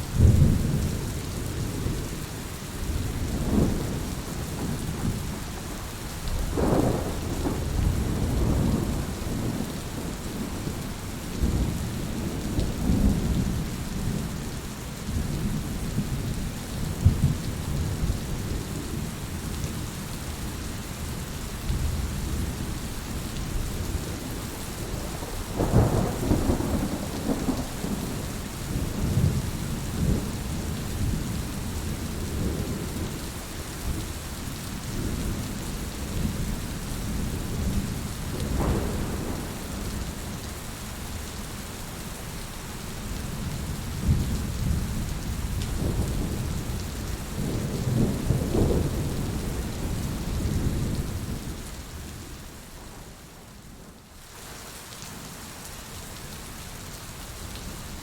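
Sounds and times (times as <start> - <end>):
heavy rain falling: 0.0 - 58.0
thunder rumbling: 6.4 - 10.8, 24.0 - 33.0, 37.2 - 40.4, 43.6 - 51.6.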